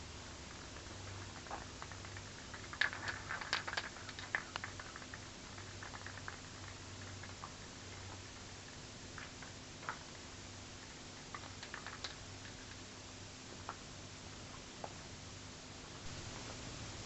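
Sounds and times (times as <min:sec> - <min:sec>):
faint low steady hum: 0:00.0 - 0:17.0.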